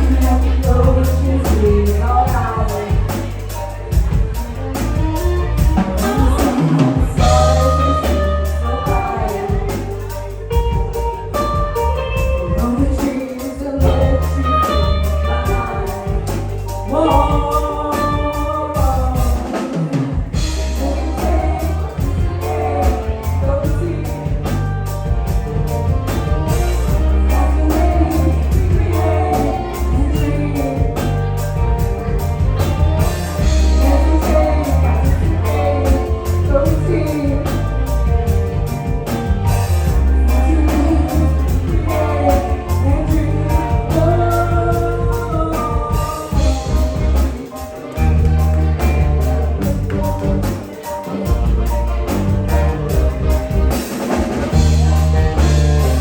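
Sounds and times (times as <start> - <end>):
woman singing: 0.0 - 38.9, 39.5 - 56.0
live band playing: 0.0 - 56.0.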